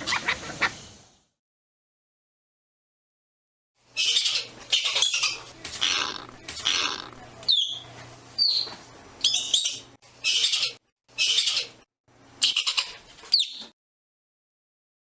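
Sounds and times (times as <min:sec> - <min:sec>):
raspy squirrel calls: 0:04.0 - 0:07.7
ground squirrel chirping: 0:04.0 - 0:07.8.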